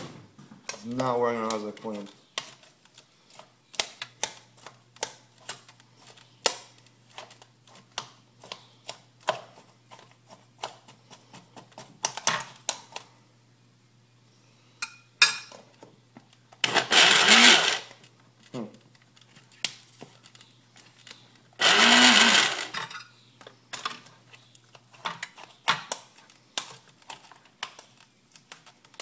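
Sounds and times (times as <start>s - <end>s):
utensil scraping frozen strawberries: 20.2s - 22.7s.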